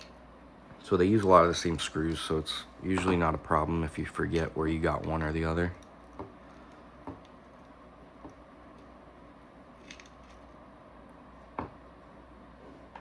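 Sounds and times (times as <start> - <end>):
steady low hum: 0.0 - 13.0
small metal parts clicking: 9.8 - 10.5.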